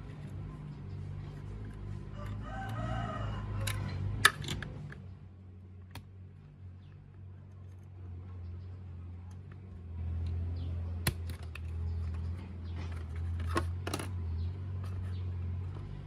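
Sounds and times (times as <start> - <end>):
steady low hum: 0.0 - 16.0
rooster crowing: 2.0 - 4.1.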